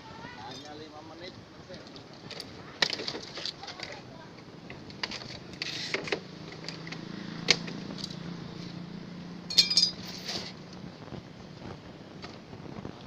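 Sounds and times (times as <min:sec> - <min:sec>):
metal scrap clinking: 0:09.5 - 0:10.5.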